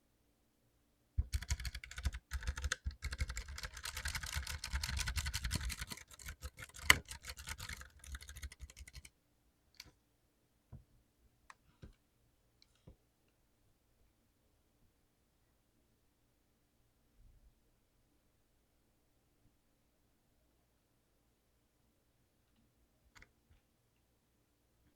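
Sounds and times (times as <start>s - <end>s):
clicky mechanical keyboard typing: 1.2s - 9.1s.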